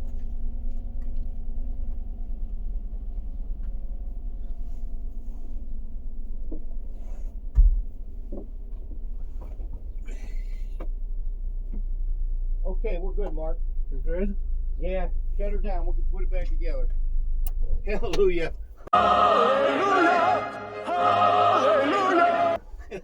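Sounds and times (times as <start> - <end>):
car engine idling: 0.0 - 23.0
dull thump: 7.5 - 9.9.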